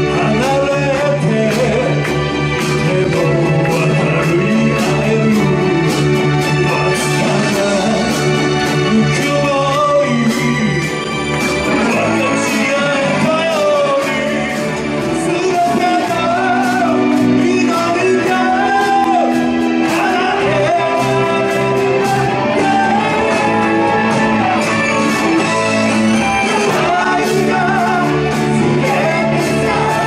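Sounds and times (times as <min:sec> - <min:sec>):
electric guitar and bass: 0:00.0 - 0:30.0
person singing: 0:00.0 - 0:30.0.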